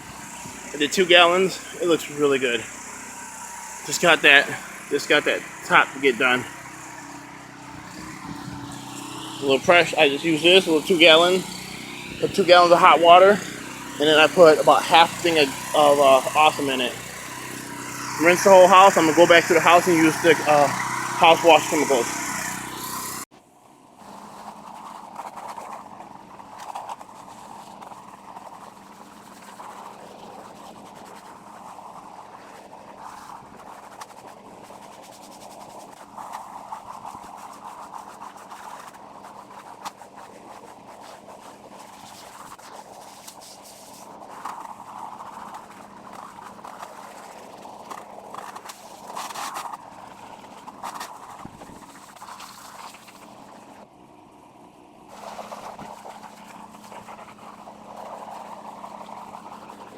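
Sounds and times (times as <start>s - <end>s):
low engine hum: 0.0s - 23.2s
pressure washer water spray: 0.0s - 23.2s.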